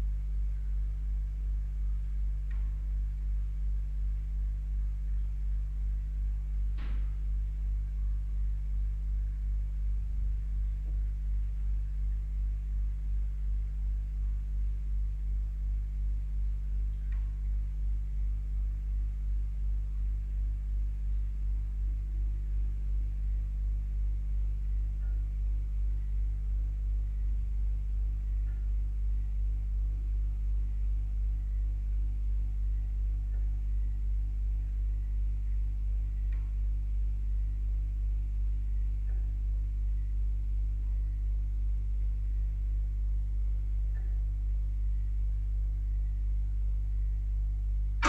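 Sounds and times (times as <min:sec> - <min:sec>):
pump humming with a throb: 0:00.0 - 0:48.0.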